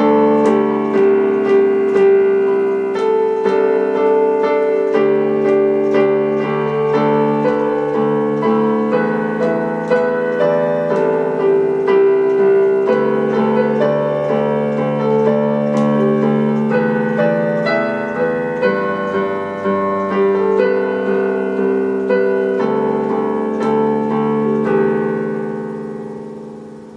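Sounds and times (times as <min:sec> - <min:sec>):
piano background music: 0:00.0 - 0:26.9.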